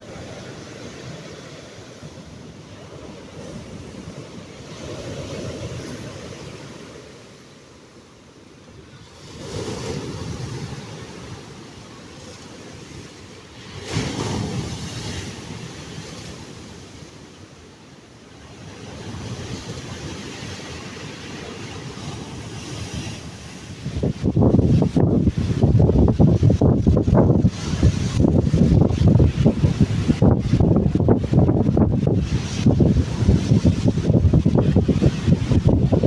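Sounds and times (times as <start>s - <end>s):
waves breaking on shore: 0.0s - 36.0s
wind buffeting microphone: 18.8s - 36.0s.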